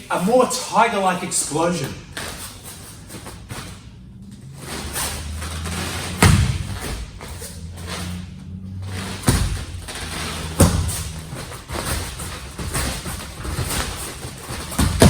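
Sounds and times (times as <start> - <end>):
feet thudding on floor: 4.6 - 15.0.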